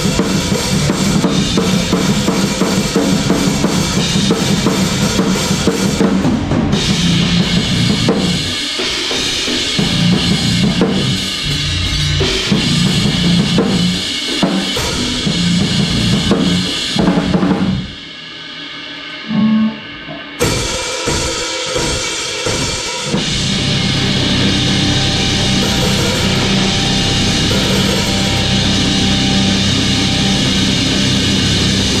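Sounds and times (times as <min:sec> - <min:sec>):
drum kit playing a beat: 0:00.0 - 0:17.8, 0:19.2 - 0:32.0
band playing: 0:19.2 - 0:20.2, 0:23.4 - 0:32.0.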